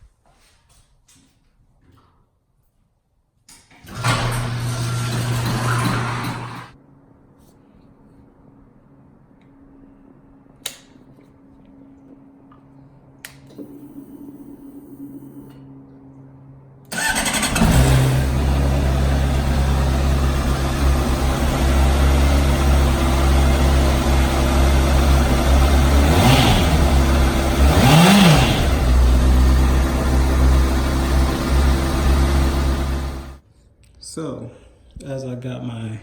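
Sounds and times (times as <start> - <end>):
motorcycle engine revving: 16.9 - 33.4
motorcycle engine idling: 17.0 - 33.4.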